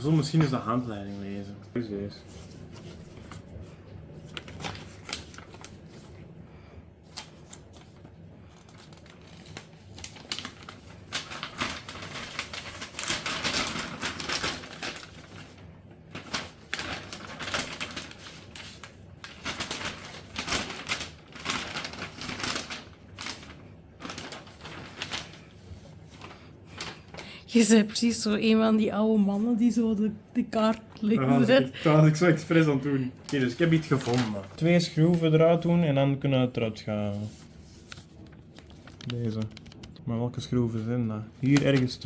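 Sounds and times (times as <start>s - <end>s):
paper rustling and crinkling: 2.1s - 6.4s, 7.0s - 27.3s, 31.0s - 35.8s, 36.6s - 40.0s, 40.6s - 42.0s
clicks and taps: 37.9s - 40.0s.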